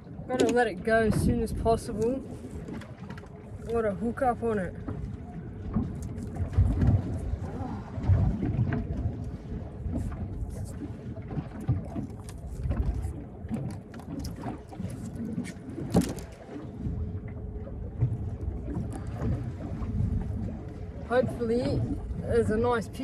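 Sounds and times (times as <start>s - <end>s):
knocks and clicks on boat: 0.0s - 23.0s
low uneven rumble: 0.0s - 23.0s.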